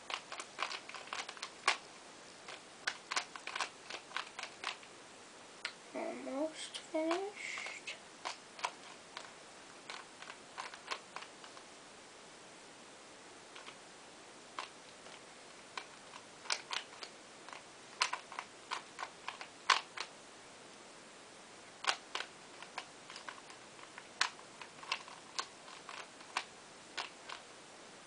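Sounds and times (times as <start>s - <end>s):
plastic puzzle cube clicks: 0.1s - 1.8s, 2.5s - 4.9s, 7.0s - 9.3s, 9.9s - 11.6s, 13.6s - 13.8s, 14.6s - 20.1s, 21.8s - 27.4s.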